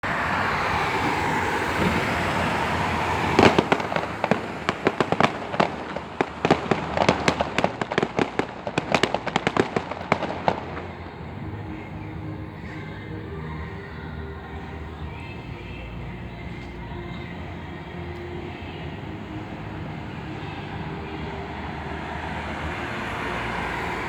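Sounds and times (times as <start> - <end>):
steady rushing noise: 0.0 - 24.0
fireworks bangs and cracks: 1.0 - 11.2.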